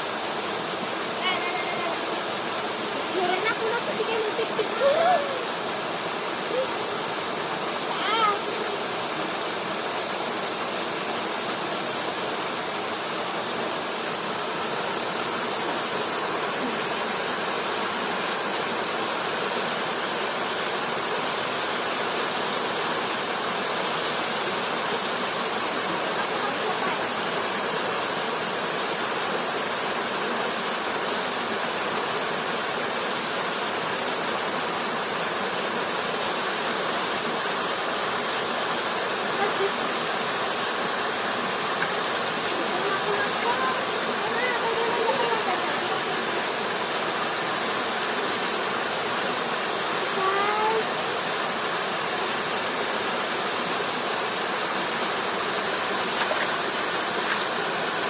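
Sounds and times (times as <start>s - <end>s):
rushing water: 0.0s - 58.0s.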